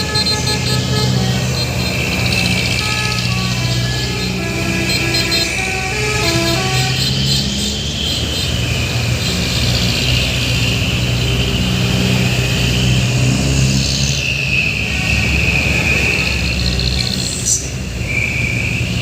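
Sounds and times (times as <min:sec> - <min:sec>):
multi-tone horn tune: 0:00.0 - 0:08.3, 0:14.8 - 0:16.4
truck engine droning: 0:00.0 - 0:19.0.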